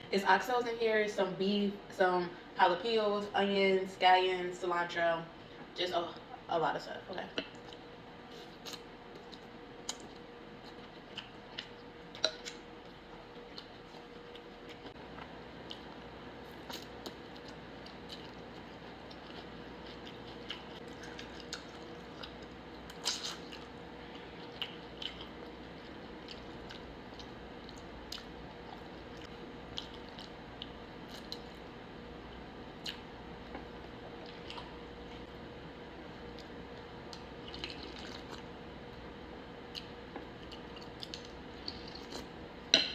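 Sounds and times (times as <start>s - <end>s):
faint hum: 0.0s - 42.9s
soft chewing: 7.4s - 35.4s, 36.0s - 39.0s, 39.6s - 42.4s.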